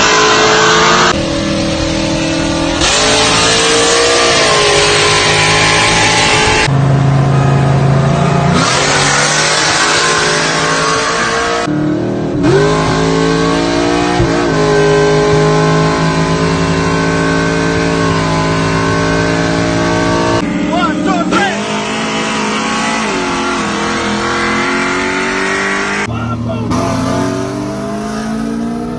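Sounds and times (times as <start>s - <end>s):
car engine running: 26.0s - 28.9s.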